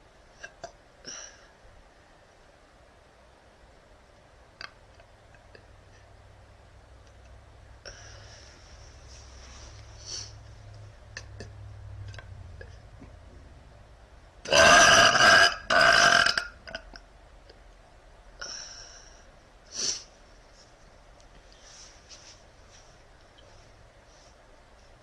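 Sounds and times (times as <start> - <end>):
woman burping: 14.5 - 17.0.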